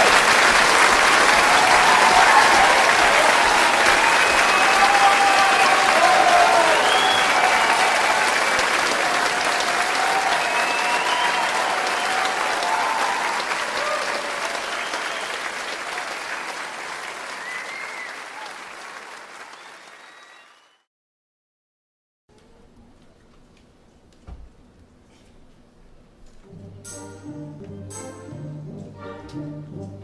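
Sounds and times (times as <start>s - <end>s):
audience applauding: 0.0s - 20.9s.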